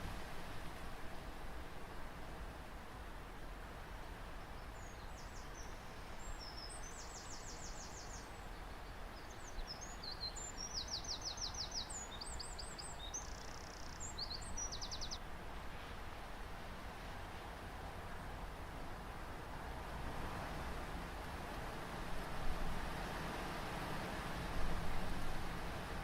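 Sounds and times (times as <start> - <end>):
outdoor ambient hiss: 0.0 - 26.0
songbird trilling and chirping: 9.2 - 15.2.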